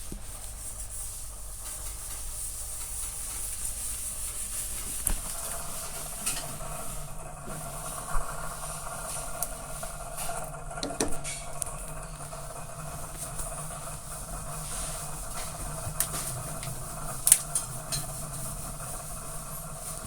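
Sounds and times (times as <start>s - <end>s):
refrigerator fan humming: 0.0s - 20.0s.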